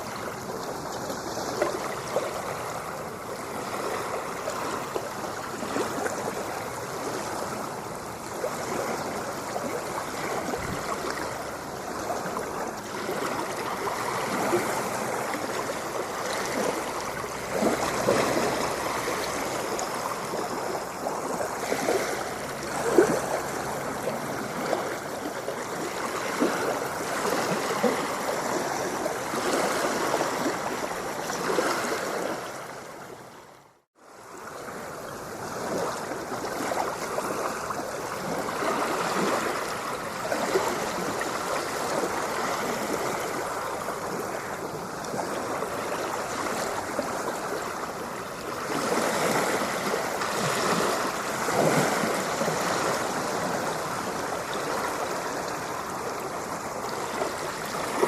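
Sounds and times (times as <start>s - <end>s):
small water splashes: 0.0s - 33.3s, 33.9s - 58.0s
ocean water washing: 0.0s - 58.0s.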